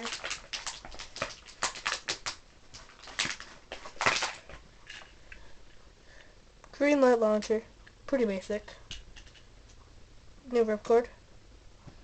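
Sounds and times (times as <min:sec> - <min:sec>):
plastic packaging crinkling: 0:00.0 - 0:05.2.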